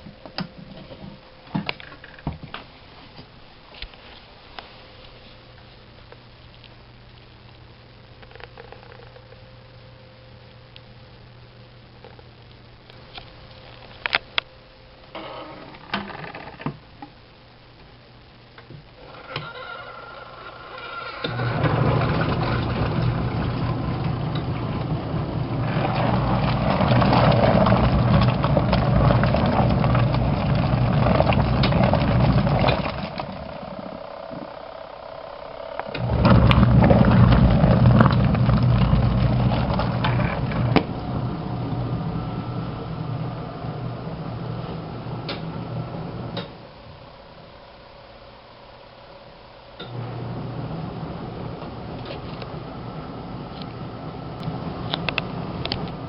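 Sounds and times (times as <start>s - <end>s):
washing machine motor humming: 19.0s - 47.4s, 49.8s - 56.0s
water churning in tub: 21.1s - 34.5s, 35.9s - 46.1s.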